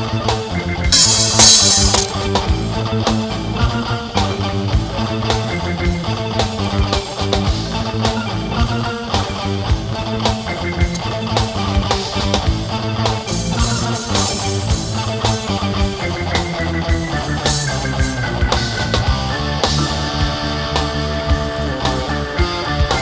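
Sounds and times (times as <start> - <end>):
bass guitar: 0.0 - 23.0
electric guitar: 0.0 - 23.0
steady drum beat: 0.9 - 2.7.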